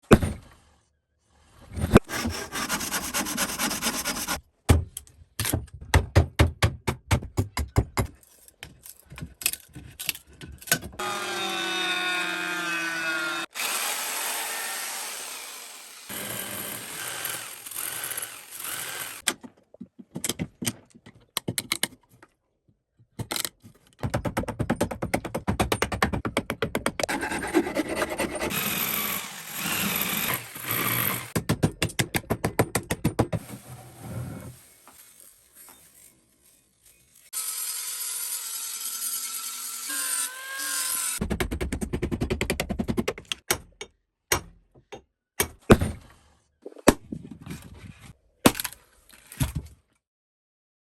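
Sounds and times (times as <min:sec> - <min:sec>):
rhythmic sawing or filing strokes: 0:02.0 - 0:04.4, 0:27.0 - 0:31.4
steady grinding noise: 0:27.0 - 0:31.4.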